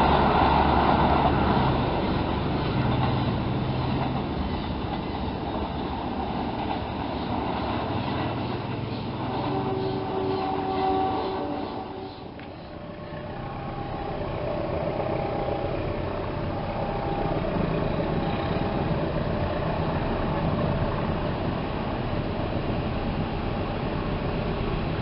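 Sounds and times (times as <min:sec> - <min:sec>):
train rumbling on rails: 0:00.0 - 0:25.0
locomotive horn: 0:09.1 - 0:12.4, 0:13.1 - 0:17.6.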